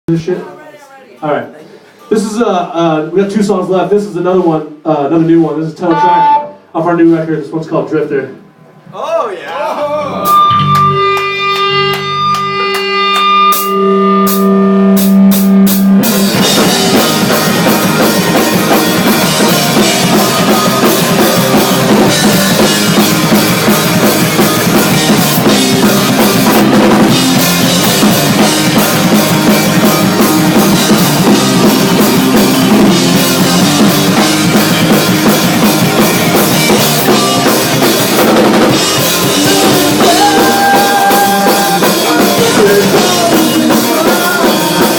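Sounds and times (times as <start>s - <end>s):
punk rock band playing live: 10.0s - 44.9s.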